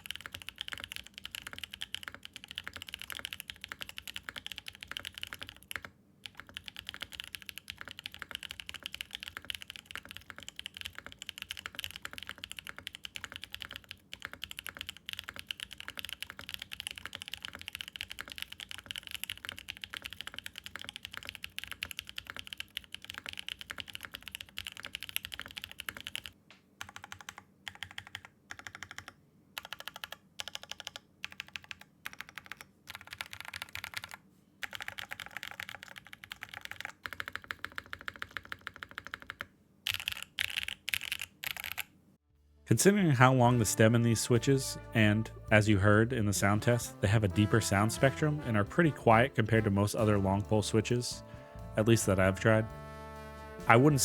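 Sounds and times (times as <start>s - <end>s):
mechanical keyboard typing: 0.0s - 41.9s.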